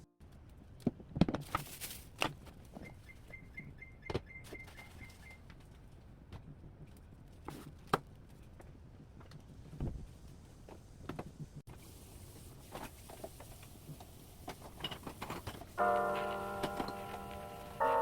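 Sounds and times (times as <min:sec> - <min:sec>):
rustle: 0:01.4 - 0:03.3, 0:11.7 - 0:18.0.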